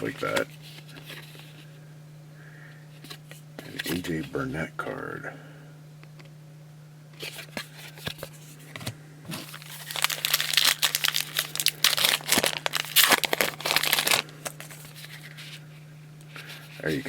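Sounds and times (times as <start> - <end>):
foil wrapper crinkling and tearing: 9.3 - 15.4.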